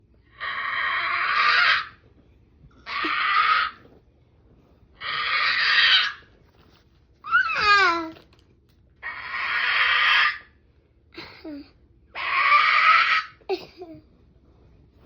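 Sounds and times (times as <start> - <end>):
raspy bird-like screeches: 5.0 - 6.3.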